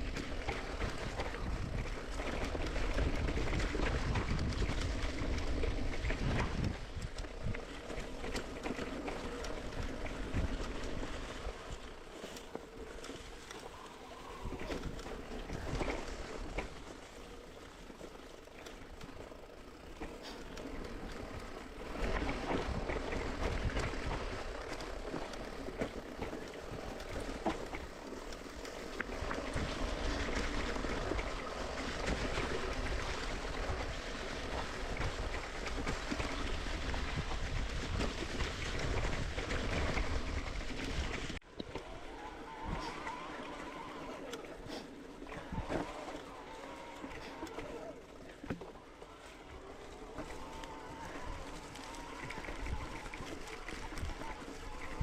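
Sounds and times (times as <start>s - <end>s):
wind on microphone: 0.0s - 8.4s, 29.0s - 41.4s, 49.5s - 55.0s
bike rattling: 0.0s - 55.0s
bike tyre noise on dirt: 0.0s - 55.0s.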